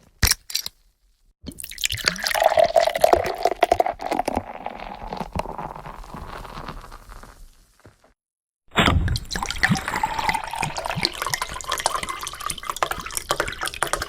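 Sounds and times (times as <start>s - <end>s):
liquid pouring into container: 1.5s - 6.8s, 9.2s - 14.0s.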